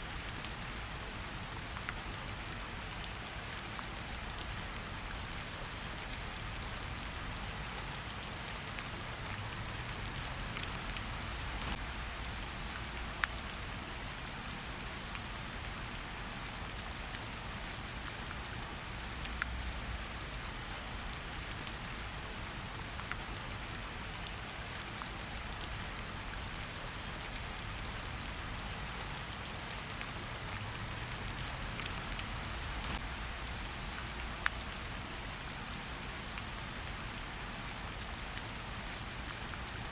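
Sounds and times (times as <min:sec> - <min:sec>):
steady rain falling: 0:00.0 - 0:39.9
raindrop clicks: 0:10.2 - 0:11.8, 0:31.3 - 0:33.1.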